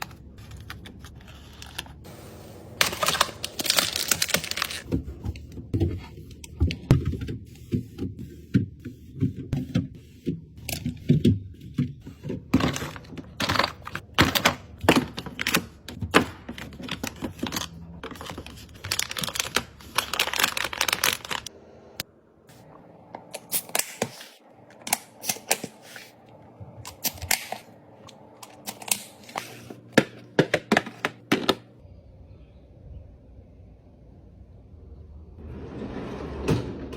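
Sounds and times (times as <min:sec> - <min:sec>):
packaging rustling: 0:02.8 - 0:04.9, 0:16.7 - 0:21.5
containers clicking and knocking: 0:28.4 - 0:31.7.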